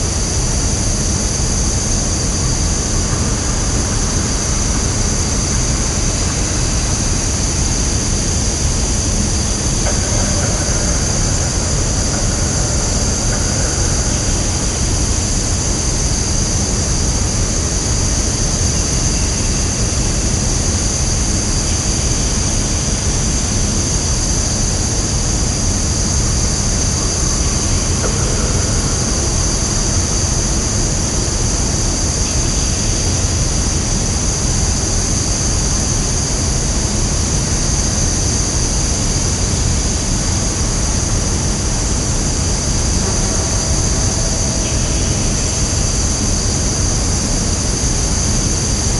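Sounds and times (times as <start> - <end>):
steady rushing noise: 8.6 - 17.1, 40.6 - 48.9.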